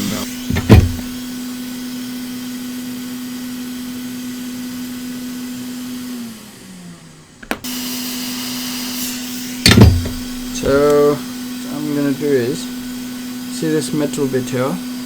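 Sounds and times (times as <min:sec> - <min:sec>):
heat gun fan hum: 0:09.7 - 0:15.0.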